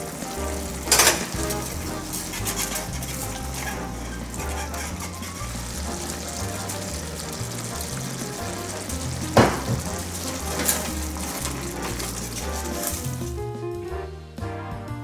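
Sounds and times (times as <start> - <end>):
food sizzling in frying pan: 0.0 - 13.4
music with steady beat: 5.6 - 15.0.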